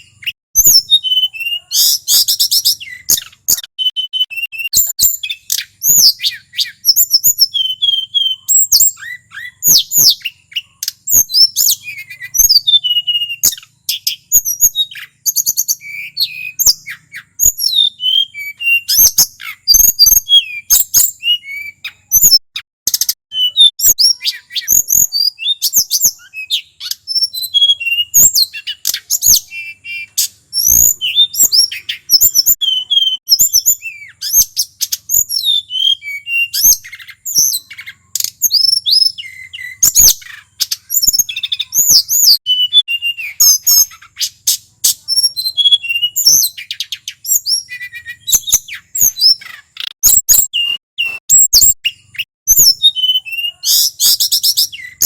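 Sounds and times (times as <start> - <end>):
flycatcher singing: 0.0 - 55.0
sharp bird clicks: 8.6 - 12.5, 21.9 - 23.2.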